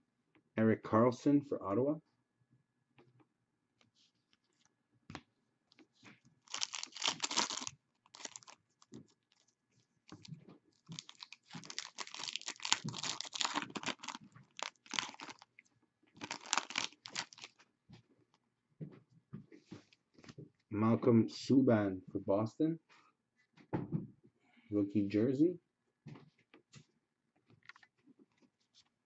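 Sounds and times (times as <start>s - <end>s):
wrapper tearing and crinkling: 6.5s - 9.4s, 10.1s - 15.6s, 16.2s - 17.6s.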